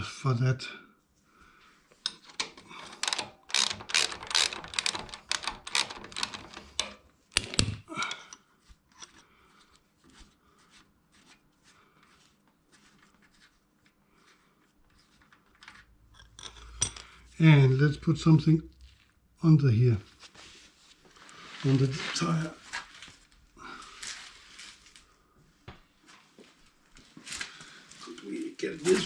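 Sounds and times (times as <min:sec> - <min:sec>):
socket ratchet clicking: 0:02.3 - 0:07.8.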